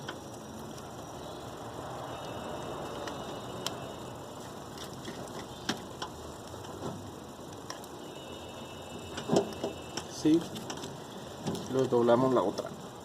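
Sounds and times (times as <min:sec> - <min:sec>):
background hiss: 0:00.0 - 0:13.0
small metal parts clicking: 0:09.1 - 0:12.7.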